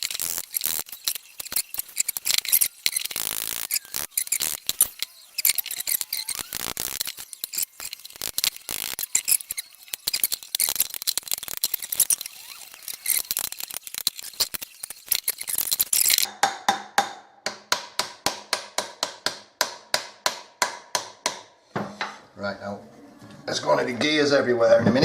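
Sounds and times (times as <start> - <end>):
metal tools clicking and scraping: 0.0 - 16.3.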